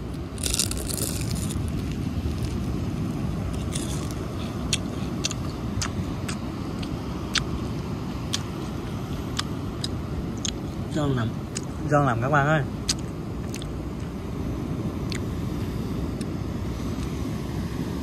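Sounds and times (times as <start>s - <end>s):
crunchy chewing: 0.0s - 10.7s, 12.8s - 14.1s
wind rumble on microphone: 0.0s - 18.0s
biting into crispy food: 0.2s - 2.7s, 3.5s - 6.4s.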